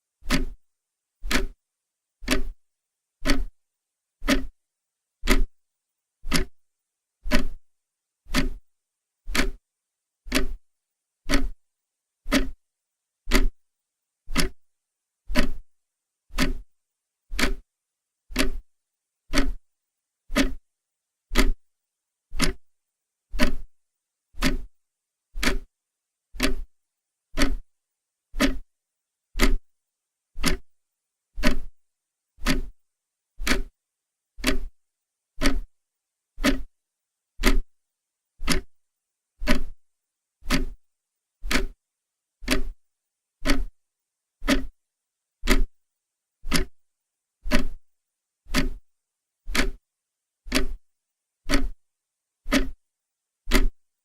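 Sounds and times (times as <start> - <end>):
clock ticking: 0.2 - 0.6, 1.2 - 1.6, 2.2 - 2.6, 3.2 - 3.5, 4.2 - 4.5, 5.2 - 5.5, 6.3 - 6.6, 7.3 - 7.6, 8.3 - 8.6, 9.3 - 9.6, 10.3 - 10.6, 11.3 - 11.6, 12.3 - 12.6, 13.3 - 13.6, 14.3 - 14.6, 15.3 - 15.6, 16.3 - 16.6, 17.3 - 17.6, 18.3 - 18.6, 19.3 - 19.6, 20.3 - 20.6, 21.3 - 21.6, 22.4 - 22.7, 23.4 - 23.7, 24.4 - 24.7, 25.4 - 25.7, 26.4 - 26.7, 27.4 - 27.7, 28.4 - 28.6, 29.4 - 29.6, 30.4 - 30.7, 31.4 - 31.7, 32.4 - 32.7, 33.4 - 33.7, 34.4 - 34.7, 35.4 - 35.7, 36.4 - 36.7, 37.4 - 37.7, 38.4 - 38.8, 39.4 - 39.8, 40.4 - 40.8, 41.4 - 41.8, 42.4 - 42.8, 43.4 - 43.8, 44.4 - 44.8, 45.5 - 45.7, 46.5 - 46.8, 47.5 - 47.8, 48.5 - 48.8, 49.5 - 49.8, 50.5 - 50.8, 51.5 - 51.8, 52.5 - 52.8, 53.5 - 53.8.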